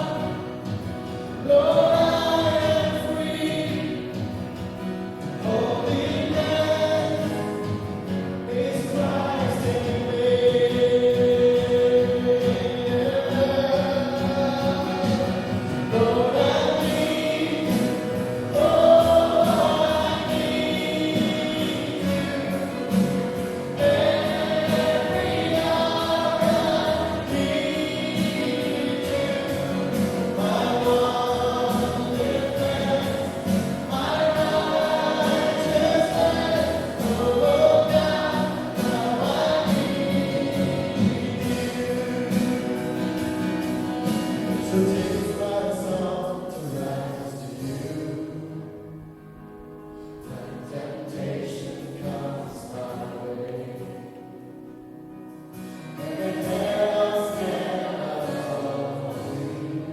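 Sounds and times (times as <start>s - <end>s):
instrumental accompaniment: 0.0s - 45.6s
choir singing a hymn: 0.0s - 49.0s, 50.2s - 54.9s, 55.5s - 59.9s.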